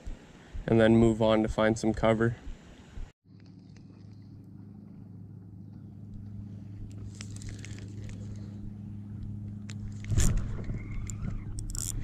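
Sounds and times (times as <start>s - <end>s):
fishing reel cranking: 10.0s - 12.0s.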